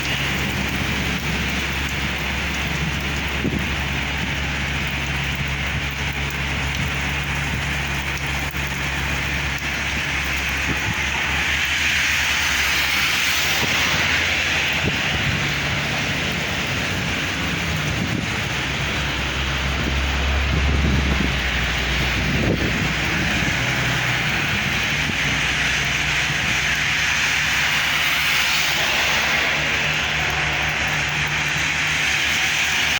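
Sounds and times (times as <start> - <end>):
heavy rain pouring: 0.0 - 32.9
low engine hum: 0.0 - 32.9
low rumble: 0.0 - 32.9.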